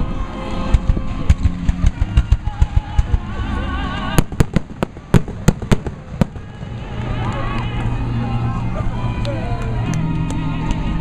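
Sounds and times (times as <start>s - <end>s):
fireworks exploding: 4.2s - 7.2s.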